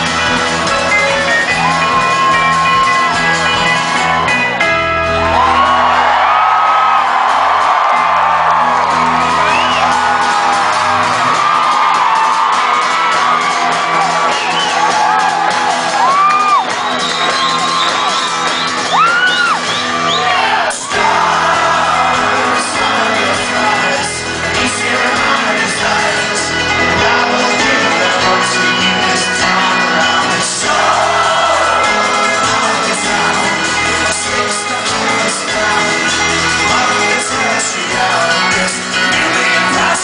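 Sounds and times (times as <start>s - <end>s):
crowd whooping and shouting: 0.0s - 40.0s
live folk-rock band playing: 0.0s - 40.0s.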